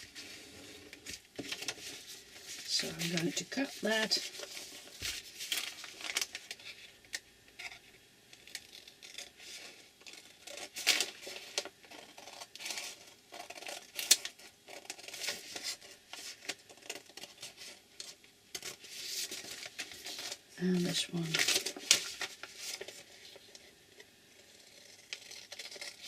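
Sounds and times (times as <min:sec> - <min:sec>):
scissors cutting paper: 0:24.4 - 0:26.0.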